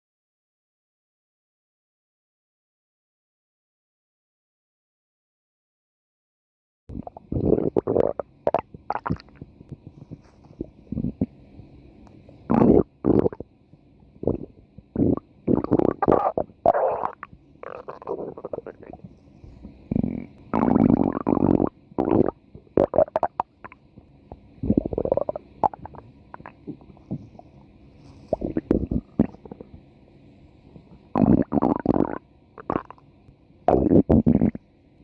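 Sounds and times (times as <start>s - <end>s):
stomach growling: 6.9s - 11.4s, 12.4s - 13.5s, 14.2s - 29.8s, 30.7s - 33.1s, 33.7s - 34.7s.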